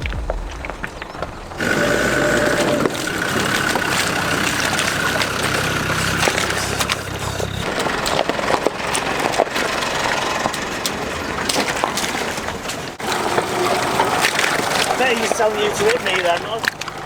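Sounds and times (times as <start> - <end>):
off-road vehicle engine running: 0.0 - 17.0.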